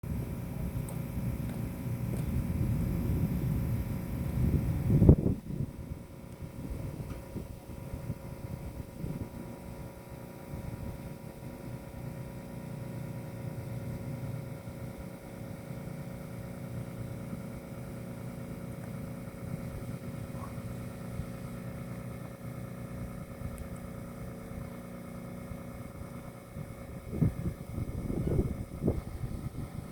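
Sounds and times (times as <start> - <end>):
constant mechanical hum: 0.0 - 29.9
distant jet rumble: 0.1 - 9.5, 18.7 - 29.9.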